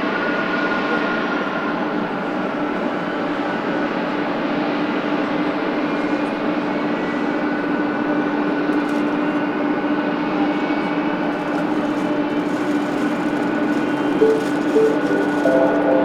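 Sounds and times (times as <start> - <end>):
high jet whine: 12.0 - 16.0.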